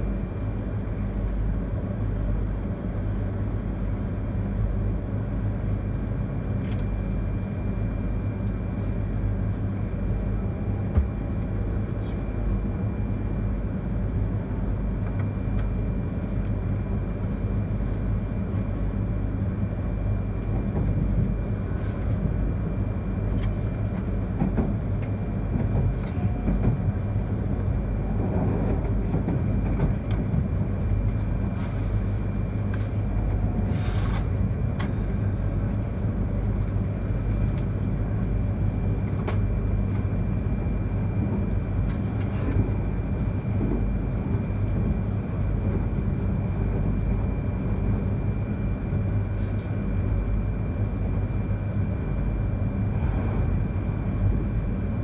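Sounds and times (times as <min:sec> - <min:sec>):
train wheels rumbling on rail: 0:00.0 - 0:55.0.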